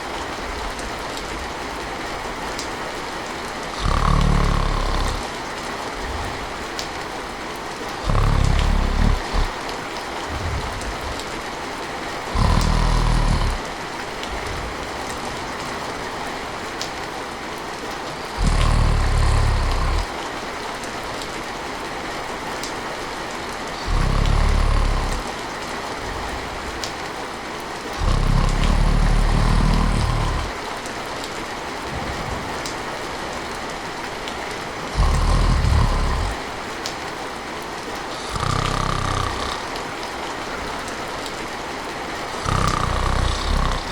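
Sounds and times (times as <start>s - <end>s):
steady rain: 0.0s - 43.9s
person snoring: 3.7s - 5.4s, 6.0s - 6.6s, 8.0s - 9.7s, 10.3s - 11.4s, 12.2s - 15.0s, 18.2s - 20.1s, 23.7s - 26.5s, 28.0s - 30.6s, 34.9s - 36.4s, 38.1s - 39.8s, 42.3s - 43.9s.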